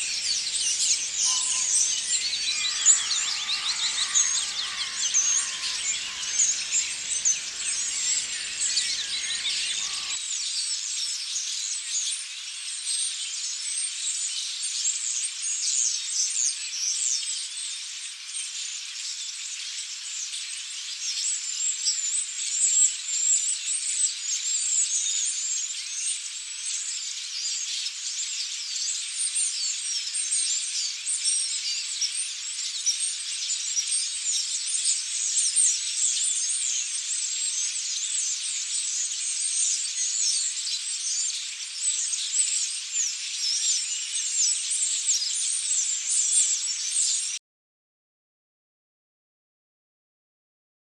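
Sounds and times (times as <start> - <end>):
small birds chirping: 0.0 - 10.2.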